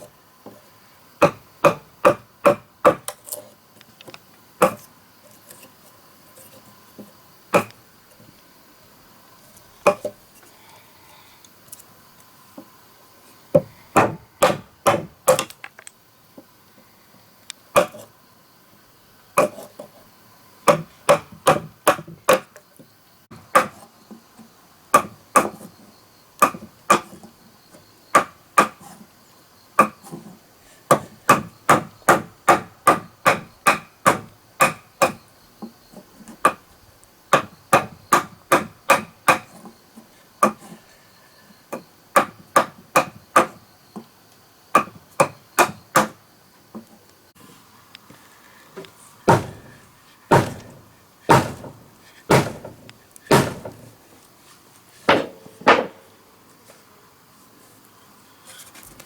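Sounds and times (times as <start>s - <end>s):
hand tool chopping wood: 1.2s - 3.4s, 4.6s - 4.9s, 7.5s - 7.8s, 13.6s - 15.6s, 17.8s - 18.1s, 19.4s - 19.7s, 20.7s - 22.5s, 23.5s - 23.8s, 25.0s - 25.7s, 26.4s - 27.2s, 28.1s - 29.0s, 30.9s - 35.2s, 37.3s - 39.7s, 40.4s - 40.7s, 42.2s - 43.6s, 44.8s - 46.2s, 49.2s - 54.0s, 55.1s - 56.0s.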